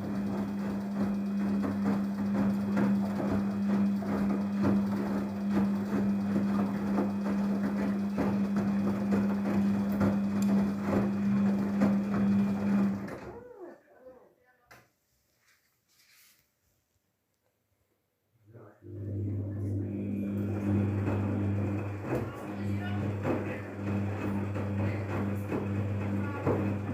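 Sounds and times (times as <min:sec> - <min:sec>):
washing machine motor hum: 0:00.0 - 0:13.7, 0:18.6 - 0:26.9
laundry knocking in drum: 0:00.9 - 0:13.2, 0:21.0 - 0:26.9.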